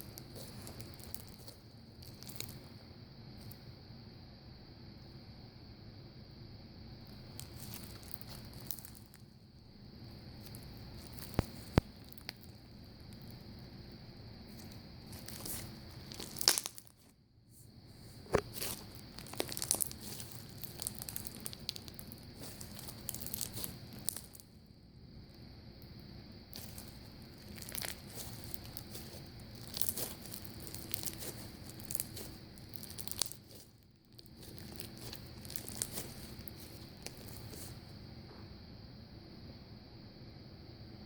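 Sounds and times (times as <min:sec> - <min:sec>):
crunchy slime squeezed by hand: 0:00.0 - 0:02.8, 0:07.0 - 0:09.4, 0:10.2 - 0:13.6, 0:14.5 - 0:17.2, 0:18.0 - 0:24.5, 0:26.5 - 0:37.8.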